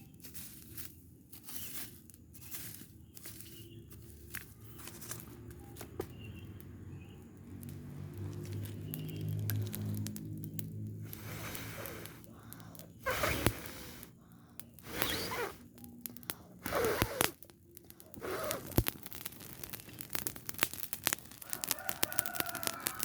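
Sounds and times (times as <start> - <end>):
fire crackling and popping: 0.0 - 23.0
short hissing bursts: 11.1 - 15.7, 16.5 - 17.4, 18.1 - 18.8.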